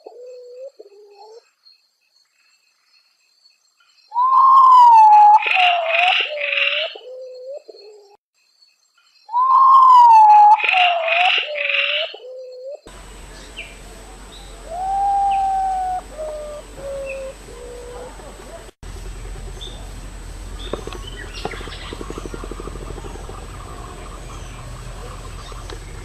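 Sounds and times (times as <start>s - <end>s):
steady hiss: 12.9s - 26.0s
bird whistling falling notes: 14.4s - 17.8s.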